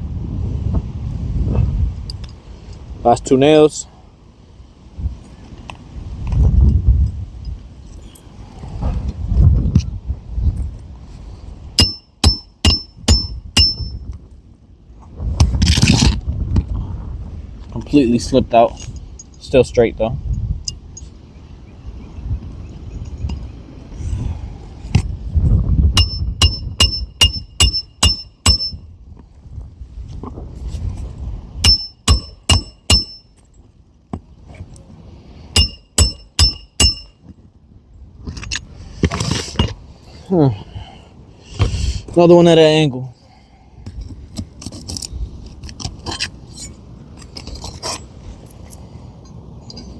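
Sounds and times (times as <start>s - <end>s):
rough scraping rustle: 7.6s - 11.8s, 14.9s - 19.6s, 29.1s - 31.6s, 38.2s - 40.3s, 43.2s - 49.9s
hammer striking roofing nail: 11.8s - 13.9s, 26.0s - 28.8s, 31.6s - 33.2s, 35.6s - 37.1s
hammer driving nails: 31.6s - 33.2s.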